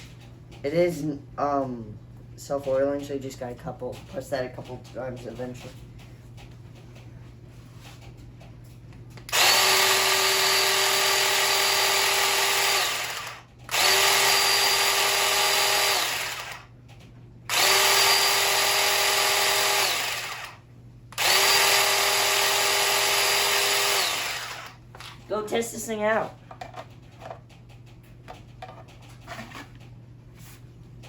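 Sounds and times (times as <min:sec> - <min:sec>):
electric chainsaw motor running: 0:09.3 - 0:16.7, 0:17.5 - 0:20.6, 0:21.2 - 0:24.8.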